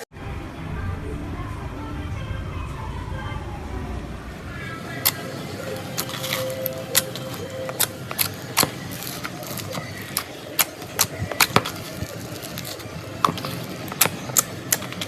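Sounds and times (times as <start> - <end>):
slime squishing: 4.4 - 15.0.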